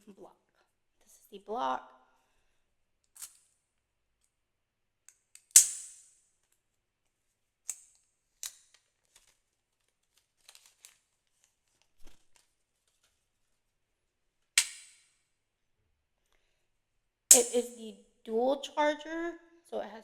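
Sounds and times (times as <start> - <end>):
packaging crinkling: 8.7 - 13.2.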